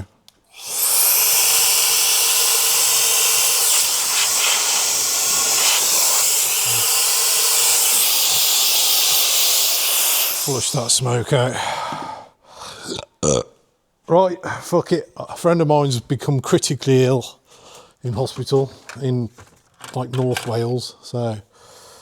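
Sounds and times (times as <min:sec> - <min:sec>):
hiss of rushing air: 0:00.6 - 0:11.0.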